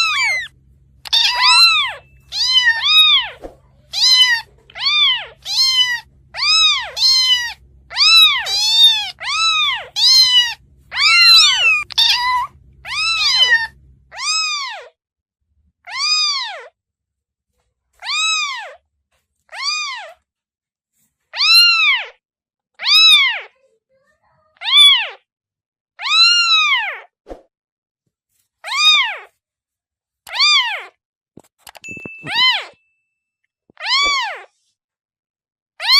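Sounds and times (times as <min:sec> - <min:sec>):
kitten mewing: 0:00.0 - 0:14.9, 0:33.8 - 0:34.5.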